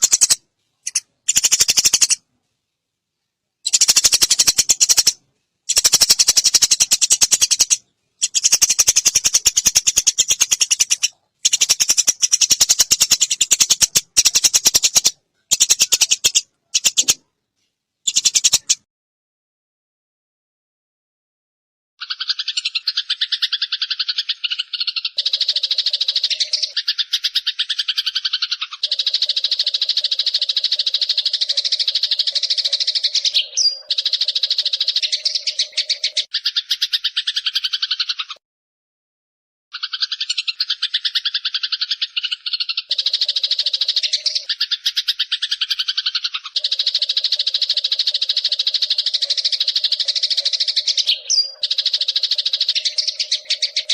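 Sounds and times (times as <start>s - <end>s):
bird trilling call: 0.0s - 2.2s, 3.7s - 17.2s, 18.1s - 18.8s, 22.0s - 38.4s, 39.7s - 53.9s
deeper bird trilling: 0.0s - 2.2s, 3.7s - 17.2s.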